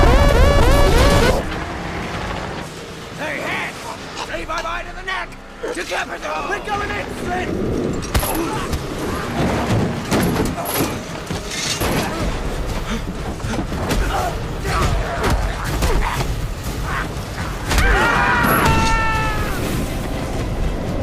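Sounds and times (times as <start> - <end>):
clattering and crashes: 7.9 - 19.0.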